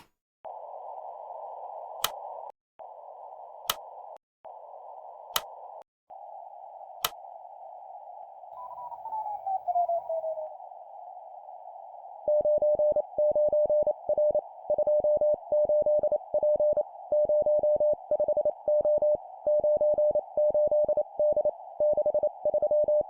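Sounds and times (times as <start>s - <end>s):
radio receiver hiss: 0.0s - 19.6s
sharp clicks: 2.0s - 2.3s, 5.3s - 5.6s, 7.0s - 7.2s
whistling tone sliding down: 8.5s - 10.6s.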